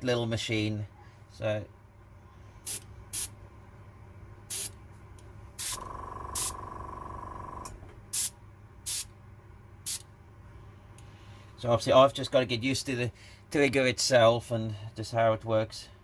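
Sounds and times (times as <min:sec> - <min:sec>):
airbrush hissing air bursts: 0:02.6 - 0:03.3, 0:04.5 - 0:04.8, 0:05.6 - 0:05.8, 0:06.4 - 0:06.6, 0:08.1 - 0:08.3, 0:08.9 - 0:09.1
small compressor whining: 0:05.6 - 0:07.8.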